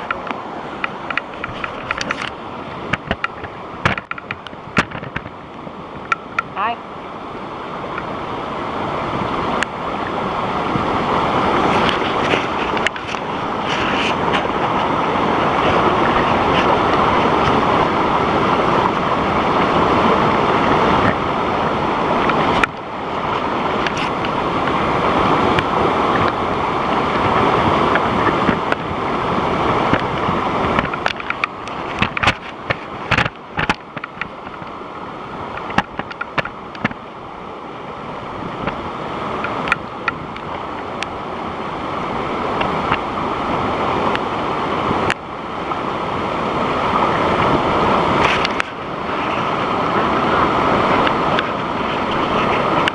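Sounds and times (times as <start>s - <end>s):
sharp clicks and knocks: 0.0s - 5.4s, 30.8s - 34.7s, 35.6s - 37.0s
waterfall rushing: 0.0s - 52.9s.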